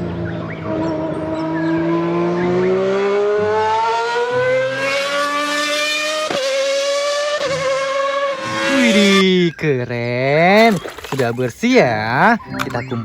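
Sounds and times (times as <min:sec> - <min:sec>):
race car engine accelerating: 0:00.0 - 0:09.5.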